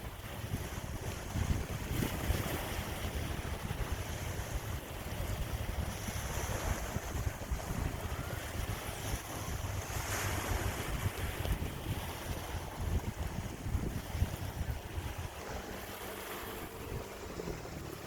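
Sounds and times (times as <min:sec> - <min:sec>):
waves washing on shore: 0:00.0 - 0:18.0
wind buffeting microphone: 0:00.0 - 0:18.0.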